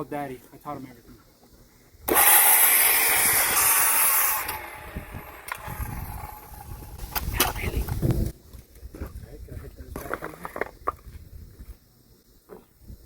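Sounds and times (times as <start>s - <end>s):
circular saw cutting wood: 2.1s - 7.0s.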